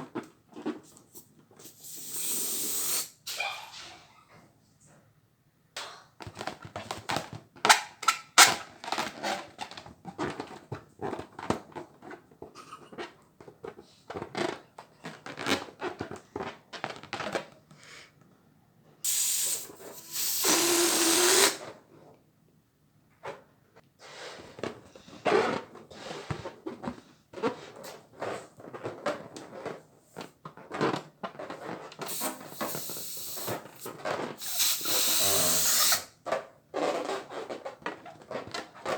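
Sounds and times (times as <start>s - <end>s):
air hissing rush: 19.1s - 21.6s, 32.1s - 36.0s
balloons popping: 19.1s - 21.6s, 32.1s - 36.0s.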